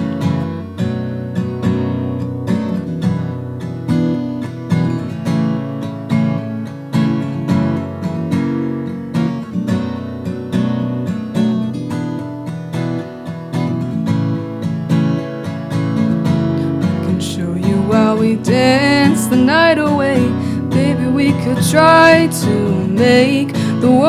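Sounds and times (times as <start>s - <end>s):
acoustic guitar strumming: 0.0s - 24.0s
person singing: 16.6s - 24.0s.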